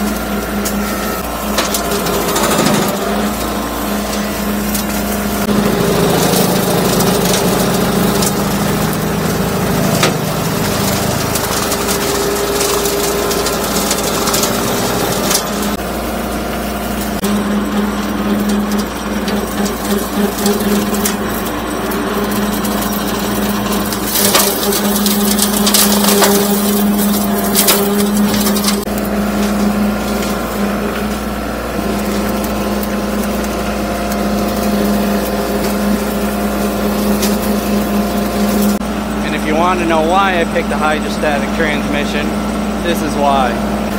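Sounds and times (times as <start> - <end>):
tractor diesel engine running: 0.0 - 43.9
brush and wood cracking: 17.0 - 38.8.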